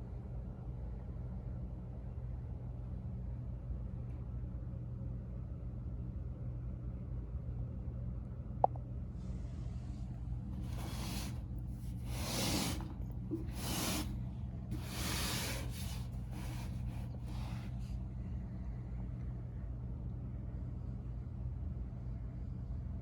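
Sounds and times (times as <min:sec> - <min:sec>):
low electrical hum: 0:00.0 - 0:23.0
short bursts of hiss: 0:10.6 - 0:14.1, 0:14.7 - 0:17.6.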